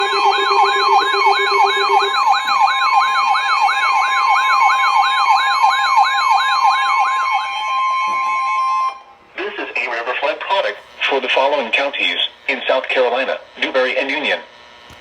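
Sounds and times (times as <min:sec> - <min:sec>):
lower steady tone: 0:00.0 - 0:02.5
steady high alert tones: 0:00.0 - 0:09.1
sweeping siren tone: 0:00.0 - 0:09.2.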